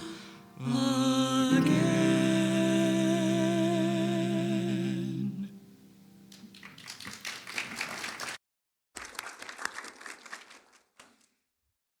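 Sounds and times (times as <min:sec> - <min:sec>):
congregation applause: 0:06.5 - 0:08.4, 0:09.0 - 0:11.2.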